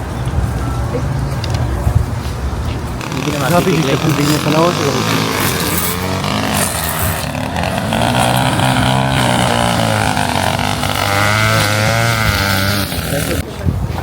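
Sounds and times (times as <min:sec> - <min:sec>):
vehicle engine running: 0:02.7 - 0:13.4.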